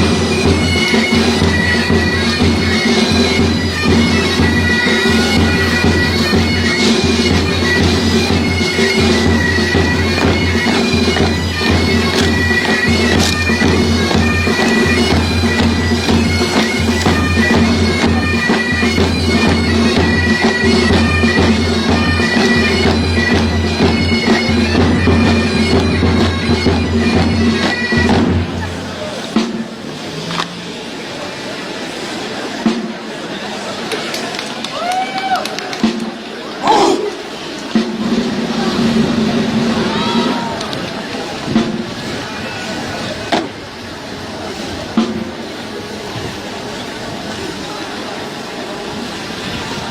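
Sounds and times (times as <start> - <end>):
bagpipes playing a tune: 0.0 - 28.7.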